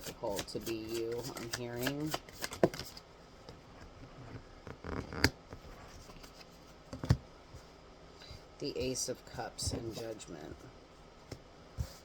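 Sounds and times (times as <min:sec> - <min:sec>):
cards clicking together: 0:00.9 - 0:03.0.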